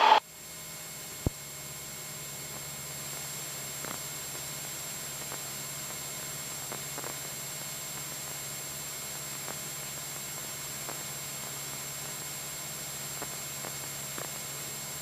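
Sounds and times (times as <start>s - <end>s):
airplane engine droning: 0.0s - 0.2s.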